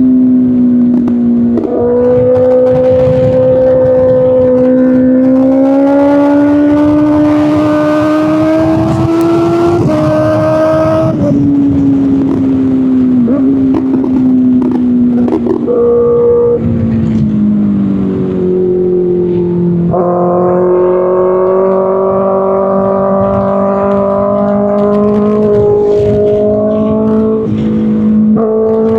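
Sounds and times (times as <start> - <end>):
exhaust crackle: 0.0 - 28.9
motorcycle engine revving: 0.0 - 28.9.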